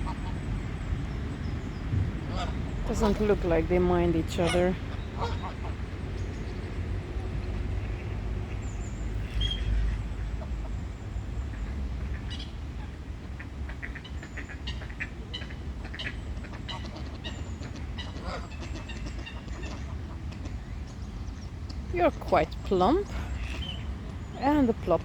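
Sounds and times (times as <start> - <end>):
steady low rumble: 0.0 - 25.0
waterfowl calls and chirps: 0.0 - 25.0.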